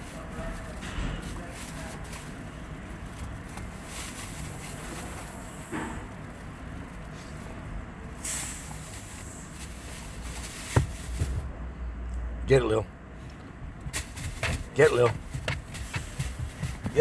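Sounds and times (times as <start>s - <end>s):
short hiss: 8.2s - 9.5s.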